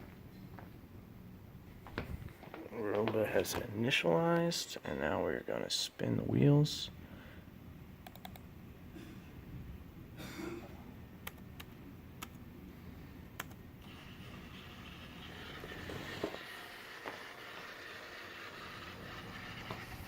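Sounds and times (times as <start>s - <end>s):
keyboard or mouse clicks: 8.0s - 8.4s, 11.2s - 12.4s, 13.4s - 13.6s
robot vacuum motors humming: 13.4s - 20.0s.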